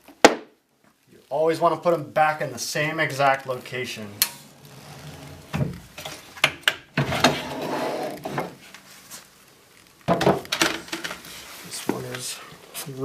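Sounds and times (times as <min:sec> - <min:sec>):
drawer rattling slide: 0:04.4 - 0:06.3, 0:07.0 - 0:08.6.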